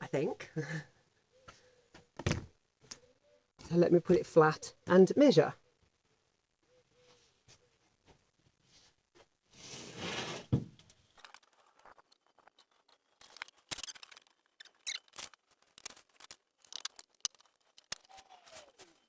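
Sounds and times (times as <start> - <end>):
plywood sheet sliding and rustling: 9.6 - 10.6
light clicks and scrapes: 10.9 - 19.0.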